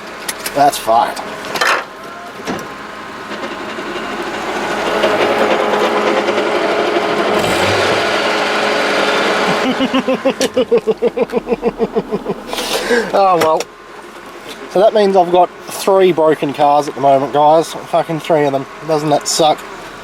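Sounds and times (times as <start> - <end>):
failing car gearbox noise: 2.6 - 9.9.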